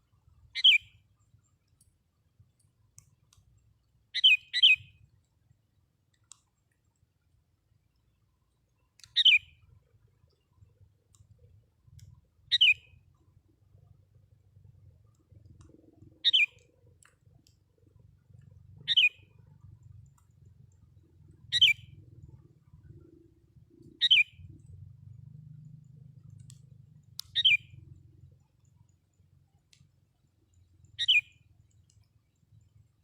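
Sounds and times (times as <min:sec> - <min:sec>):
faint low rumble: 0:09.8 - 0:33.0
bird calling downward notes: 0:27.2 - 0:27.9.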